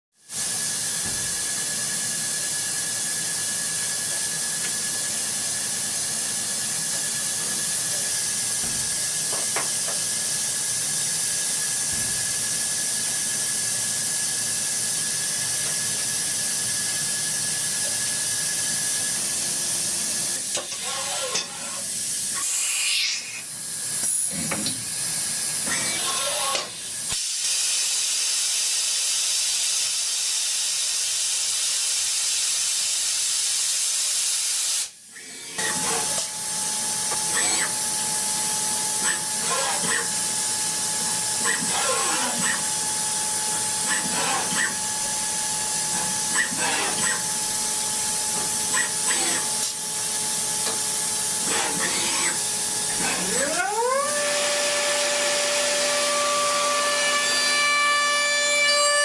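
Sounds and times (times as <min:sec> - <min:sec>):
loud steady hiss: 0:26.7 - 0:35.1.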